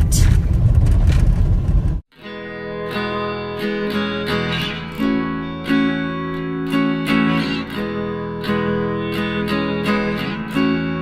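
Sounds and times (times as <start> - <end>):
road rumble inside moving car: 0.0 - 2.1
acoustic guitar strummed and plucked: 2.1 - 11.0.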